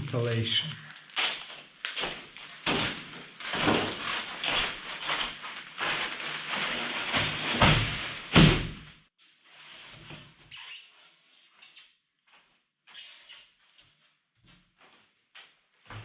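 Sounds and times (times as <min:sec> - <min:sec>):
insulation boards rustling and scraping: 0:01.2 - 0:08.4.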